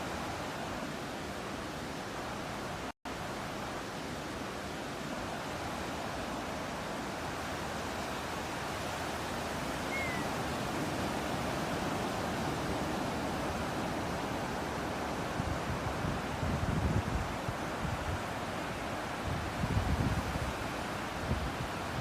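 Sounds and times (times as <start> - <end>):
ocean surf: 0.0 - 22.0
sea breeze: 0.0 - 22.0
bird chirp: 9.9 - 10.3.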